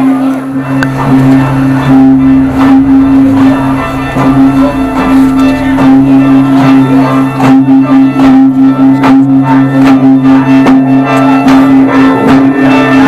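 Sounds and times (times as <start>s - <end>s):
held drone: 0.0s - 13.0s
light percussion: 0.0s - 13.0s
plucked string notes: 0.0s - 13.0s.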